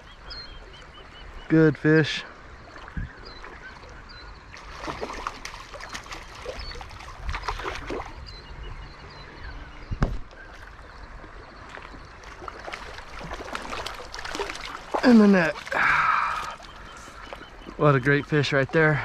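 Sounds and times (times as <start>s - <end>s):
running river: 0.0s - 19.0s
fish splashing in water: 4.5s - 8.2s, 10.7s - 17.7s.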